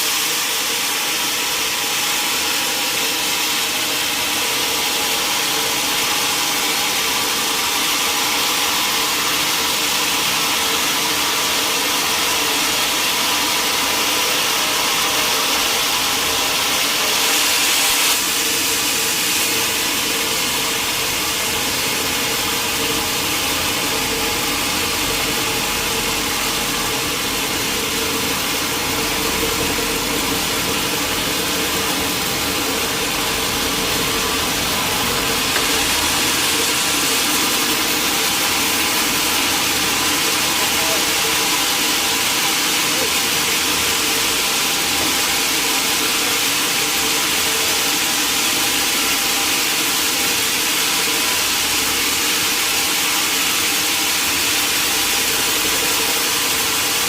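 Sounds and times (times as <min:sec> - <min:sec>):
sawmill machinery drone: 0:00.0 - 0:57.0
bright hiss: 0:14.6 - 0:48.3.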